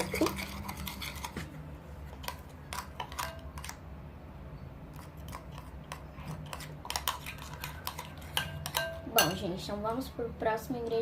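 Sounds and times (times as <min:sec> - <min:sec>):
low steady hum: 0:00.0 - 0:11.0
utensils and containers clicking: 0:02.1 - 0:03.8, 0:04.9 - 0:09.4.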